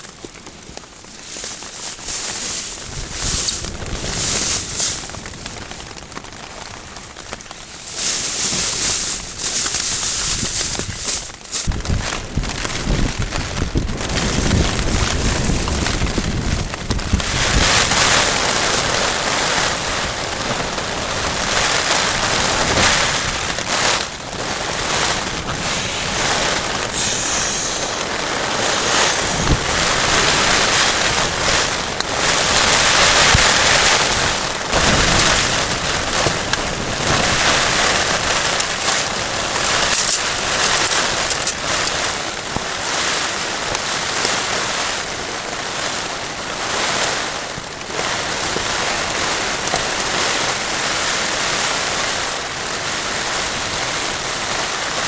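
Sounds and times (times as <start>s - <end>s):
heavy rain: 1.9s - 55.0s
strong gusting wind: 7.7s - 42.1s
wind buffeting microphone: 8.5s - 42.6s.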